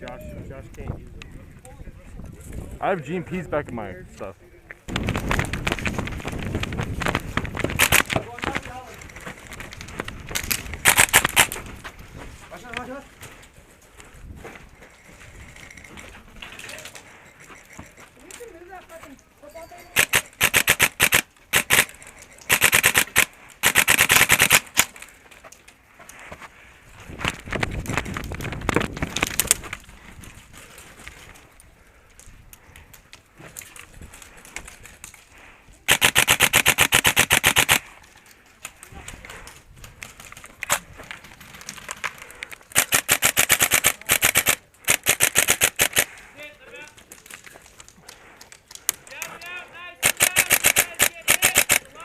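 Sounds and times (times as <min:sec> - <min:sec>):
airsoft guns firing in bursts: 0:05.0 - 0:08.6, 0:10.8 - 0:11.6, 0:20.0 - 0:25.0, 0:35.9 - 0:37.9, 0:42.7 - 0:46.1, 0:50.0 - 0:51.9.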